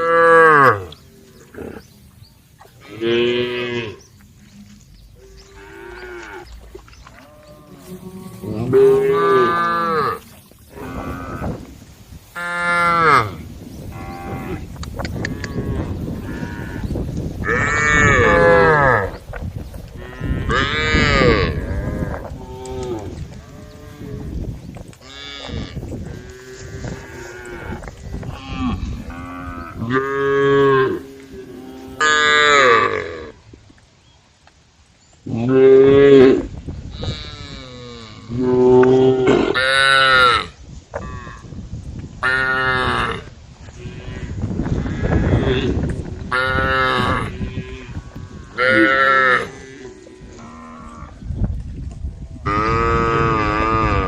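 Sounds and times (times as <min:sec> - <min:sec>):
cows mooing: 0:00.0 - 0:01.9, 0:02.8 - 0:11.8, 0:12.4 - 0:19.2, 0:20.0 - 0:33.4, 0:42.2 - 0:51.2, 0:52.4 - 0:54.0
cattle mooing: 0:04.6 - 0:11.7.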